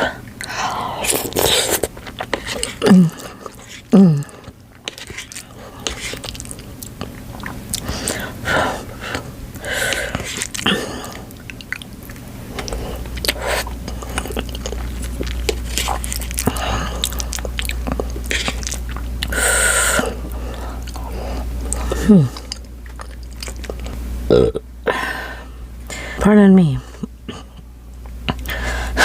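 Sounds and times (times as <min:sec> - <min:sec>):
chewing with wet mouth clicks: 0:00.3 - 0:08.3, 0:09.9 - 0:19.3, 0:20.2 - 0:24.0.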